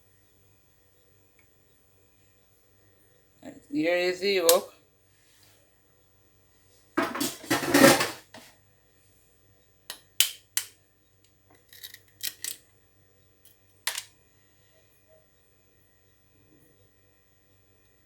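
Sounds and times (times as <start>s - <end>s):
dishes clattering: 7.0s - 8.4s.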